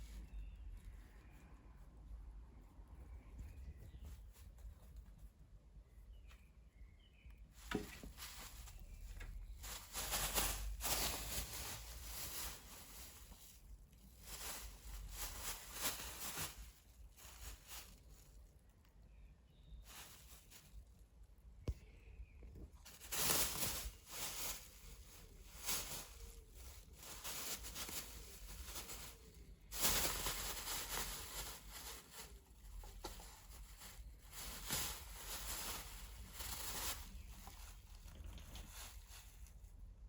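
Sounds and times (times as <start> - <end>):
plastic bag crinkling: 7.6 - 18.7, 19.8 - 21.0, 22.5 - 39.7.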